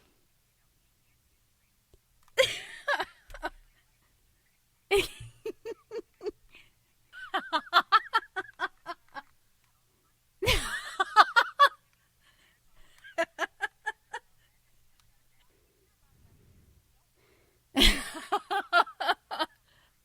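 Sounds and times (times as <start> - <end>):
woman laughing: 2.4 - 3.6, 4.9 - 9.3, 10.4 - 11.8, 12.9 - 14.4, 17.8 - 19.6.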